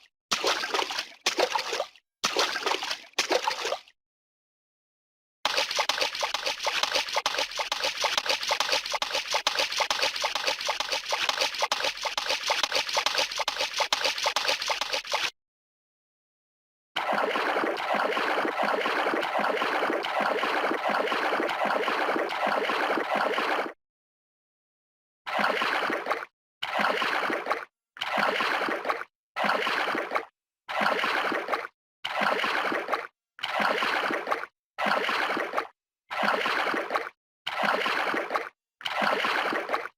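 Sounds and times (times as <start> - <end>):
water splashing strokes: 0.3 - 3.9, 5.5 - 15.3, 17.0 - 23.8, 25.3 - 39.9
water gurgling: 5.5 - 15.3, 17.0 - 23.7, 25.3 - 39.9.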